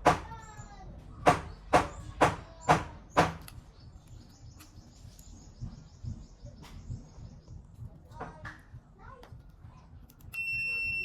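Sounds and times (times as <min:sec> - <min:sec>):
sharp knocks: 0:00.0 - 0:00.3, 0:01.2 - 0:03.4.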